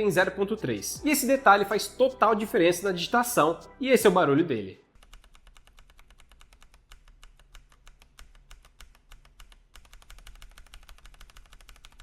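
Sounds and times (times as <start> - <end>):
mechanical keyboard typing: 5.0 - 12.0.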